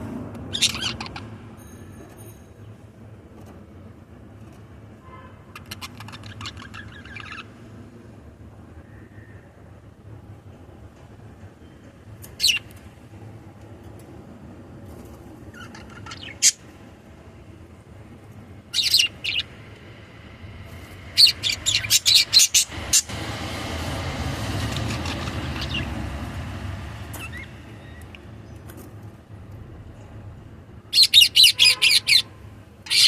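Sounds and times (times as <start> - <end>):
parrots chirping: 0.4 - 1.5, 5.5 - 7.6, 12.4 - 12.6, 15.5 - 16.7, 18.6 - 19.6, 21.1 - 23.2, 24.5 - 28.2, 30.9 - 33.0
low rushing rumble: 19.9 - 28.4.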